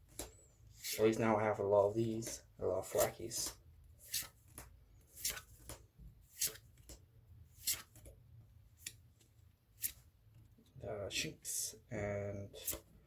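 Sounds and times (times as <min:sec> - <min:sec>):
cards swishing together: 0:02.9 - 0:07.0, 0:07.6 - 0:08.1, 0:09.8 - 0:10.0, 0:12.6 - 0:12.9.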